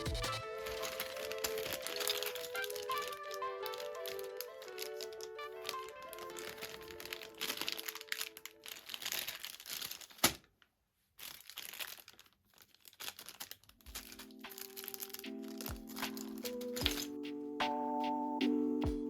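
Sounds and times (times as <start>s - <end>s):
background music: 0.0s - 8.8s, 14.0s - 19.0s
packaging crinkling: 0.7s - 10.5s, 11.2s - 15.7s.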